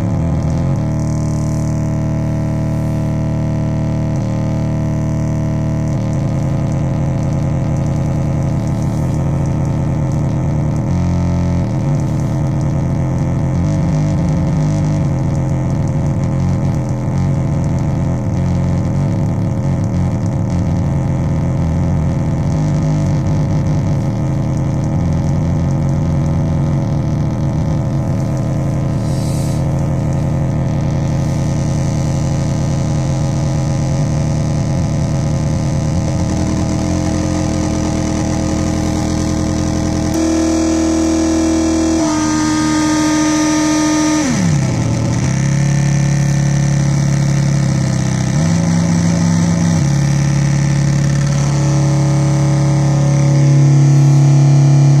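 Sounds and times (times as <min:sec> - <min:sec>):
synth drone: 0:00.0 - 0:55.0
hissy synth layer: 0:02.4 - 0:03.2, 0:28.2 - 0:30.4.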